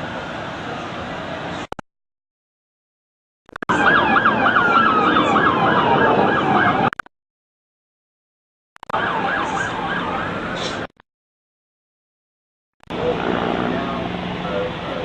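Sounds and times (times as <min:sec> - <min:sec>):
siren tone sliding downward: 0:03.7 - 0:07.0, 0:08.9 - 0:10.4
siren yelping: 0:03.7 - 0:07.0, 0:08.9 - 0:10.8.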